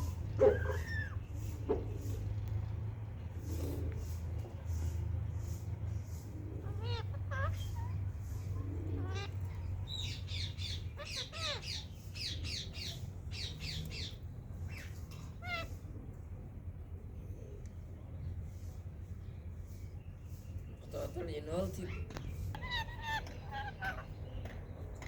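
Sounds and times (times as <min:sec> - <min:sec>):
parakeet squawking: 0:06.6 - 0:14.1, 0:14.7 - 0:15.8, 0:22.5 - 0:24.4.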